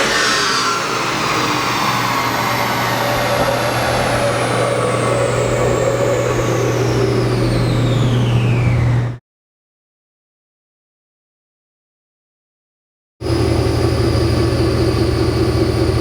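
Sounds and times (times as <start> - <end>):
high whine of rollers: 0.0 - 9.2, 13.2 - 16.0.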